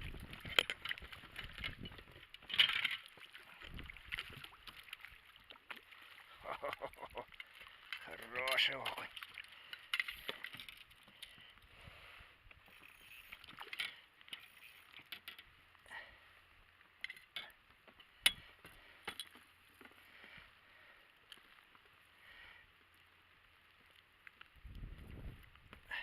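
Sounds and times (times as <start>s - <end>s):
hands handling fishing rod and line: 7.4s - 11.6s, 12.5s - 15.5s, 16.8s - 20.1s.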